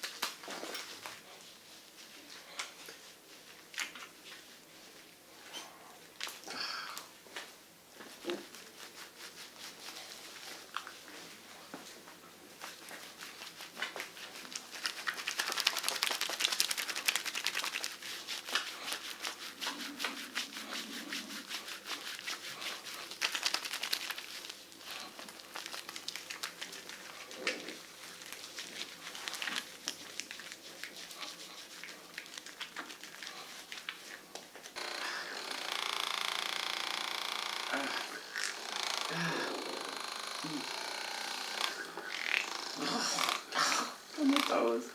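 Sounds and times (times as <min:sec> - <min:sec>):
wet squishing skin massage: 0:08.1 - 0:11.3, 0:12.5 - 0:44.8.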